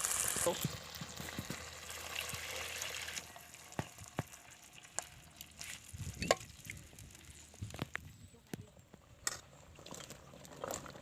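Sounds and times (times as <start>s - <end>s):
food sizzling in a pan: 0.0s - 6.3s.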